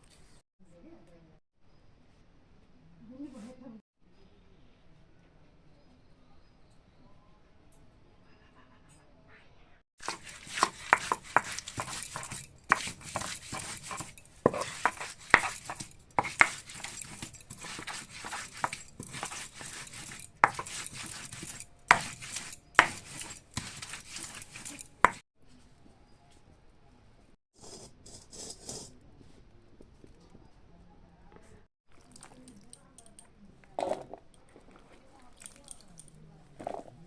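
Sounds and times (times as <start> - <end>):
kitchen utensils knocking and scraping: 10.0 - 25.2.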